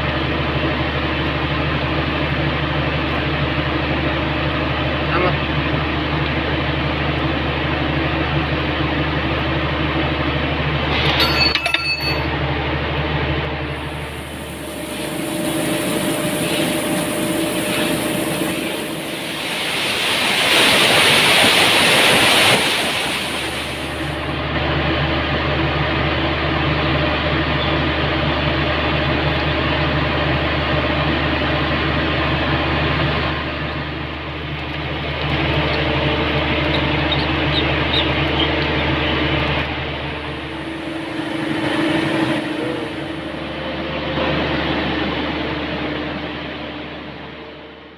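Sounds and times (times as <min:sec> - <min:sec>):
industrial pump humming: 0:00.0 - 0:47.9
mill machinery drone: 0:00.0 - 0:47.9
sharp metallic clinks: 0:11.1 - 0:12.3.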